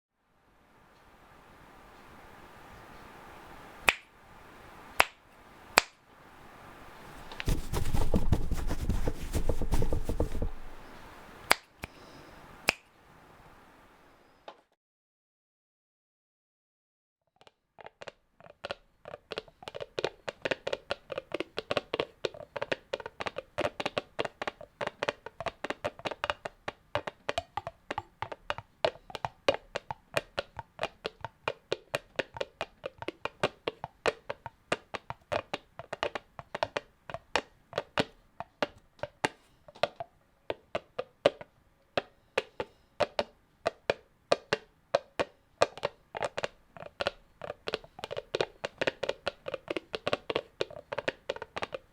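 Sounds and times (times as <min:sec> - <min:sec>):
imitated horse hoofbeats: 0:06.8 - 0:11.3, 0:17.4 - 0:51.9.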